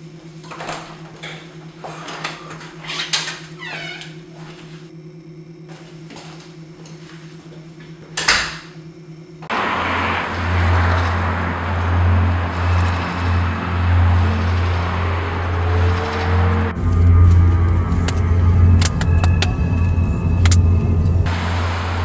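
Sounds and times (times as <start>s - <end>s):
road noise: 9.4s - 22.0s
car engine hum: 9.5s - 22.0s
faint rising tone: 9.5s - 22.0s.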